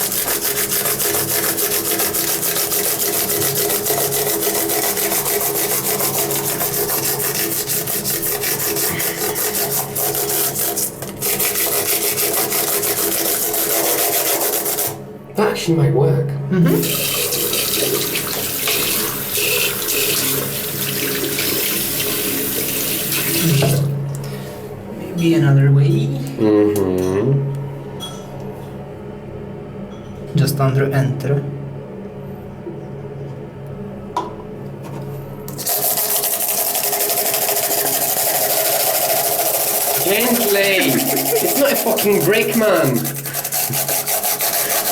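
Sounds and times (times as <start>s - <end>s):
tap water running into sink: 0.0s - 15.0s, 16.7s - 24.0s, 35.5s - 44.9s.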